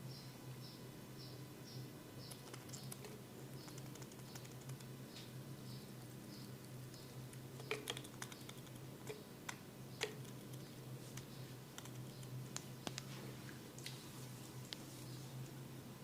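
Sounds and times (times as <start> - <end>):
low steady hum: 0.0 - 16.0
fingers clicking through oiled hair: 2.3 - 4.9, 6.6 - 13.0.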